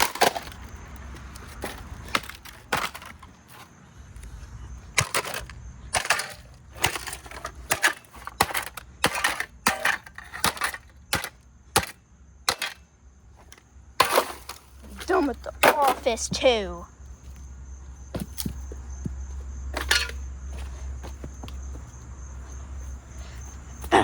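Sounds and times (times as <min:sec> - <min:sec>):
hard blows breaking plastic: 0:00.0 - 0:00.7, 0:01.4 - 0:03.3, 0:05.0 - 0:12.8, 0:13.5 - 0:16.4.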